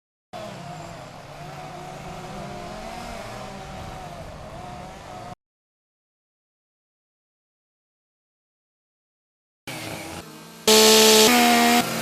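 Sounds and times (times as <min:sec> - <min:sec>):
chainsaw engine running: 0:00.4 - 0:05.3, 0:09.7 - 0:12.0.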